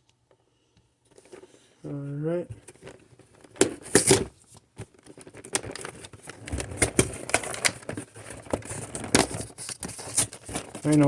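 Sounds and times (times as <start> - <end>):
packaging crinkling and tearing: 2.7 - 11.0.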